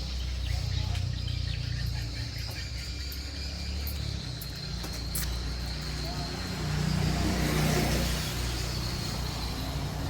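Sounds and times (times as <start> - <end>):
high-pitched insect trill: 2.6 - 7.7.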